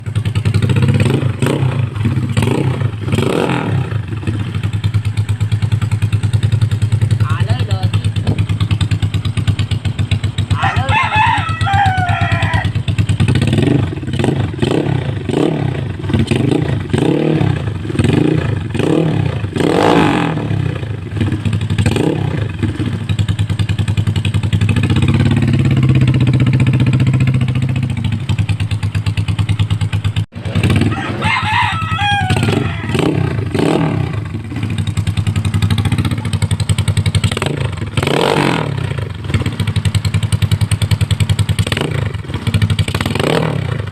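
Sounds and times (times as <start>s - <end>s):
scooter engine revving: 0.0s - 43.9s
rooster crowing: 10.5s - 12.8s, 30.6s - 33.4s.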